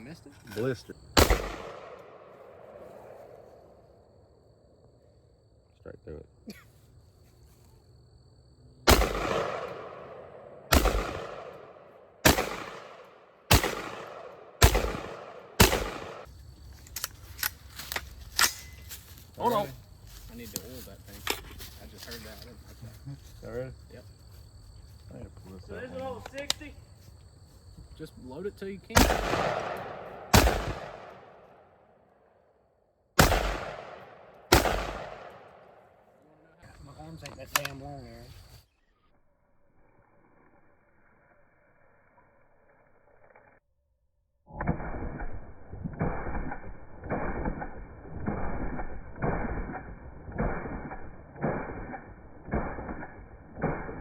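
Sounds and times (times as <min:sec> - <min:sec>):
echoing gunshots: 0:01.1 - 0:03.8, 0:08.8 - 0:16.3, 0:28.9 - 0:32.0, 0:33.2 - 0:36.1, 0:44.6 - 0:54.0
light clicks: 0:26.2 - 0:26.6, 0:37.2 - 0:37.8.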